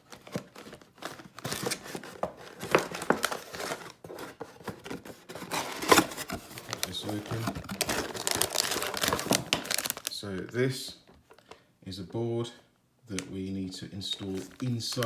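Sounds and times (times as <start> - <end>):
plastic packaging crinkling: 0.0 - 10.5, 14.1 - 15.0.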